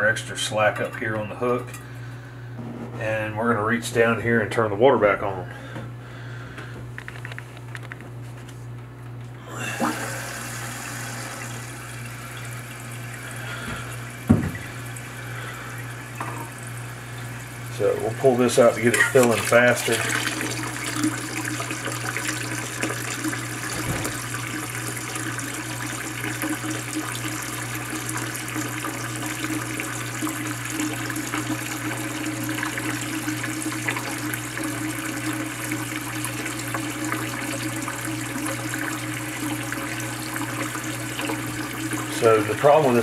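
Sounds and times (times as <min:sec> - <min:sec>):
toilet tank refilling with water: 0:09.5 - 0:43.0.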